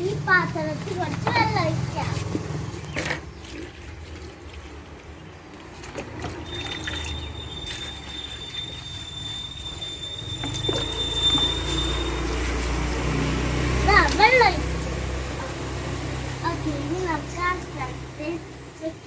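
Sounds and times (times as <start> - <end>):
water pouring into a bowl: 3.2 - 16.6.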